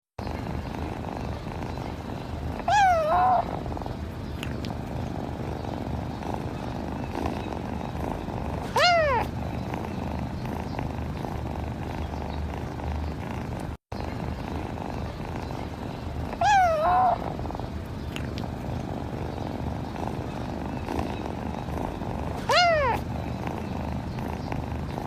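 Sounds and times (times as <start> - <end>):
low purring: 0.2 - 25.0
kitten meowing: 2.6 - 3.6, 8.6 - 9.4, 16.3 - 17.4, 22.4 - 23.1.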